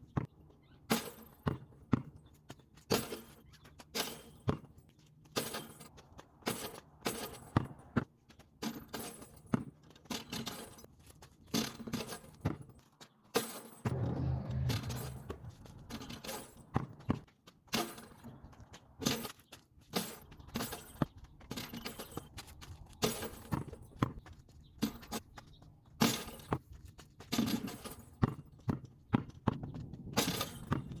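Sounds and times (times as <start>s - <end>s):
basketball bouncing on hard court: 1.4s - 3.1s, 4.4s - 4.7s, 7.1s - 8.1s, 27.4s - 31.0s.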